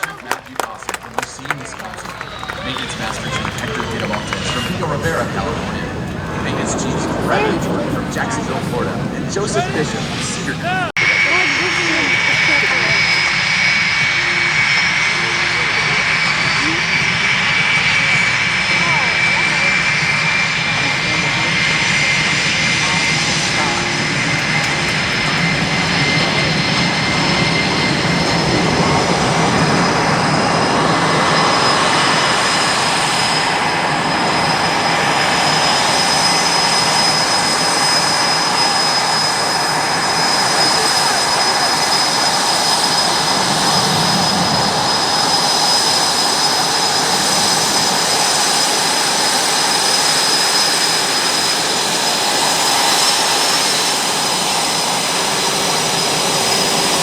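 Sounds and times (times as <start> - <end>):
jet engines roaring: 0.0 - 57.0
high turbine whine: 0.2 - 57.0.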